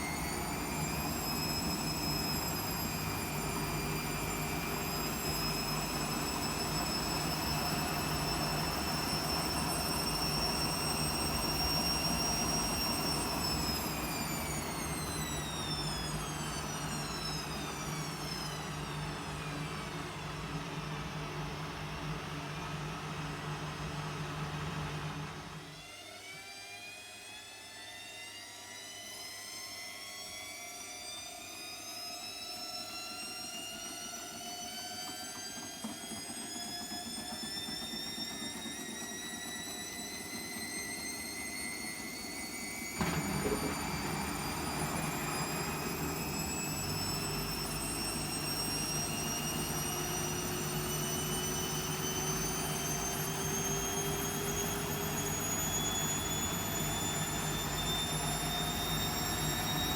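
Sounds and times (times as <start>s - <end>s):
washing machine motor whine: 0.0s - 26.5s, 28.7s - 59.9s.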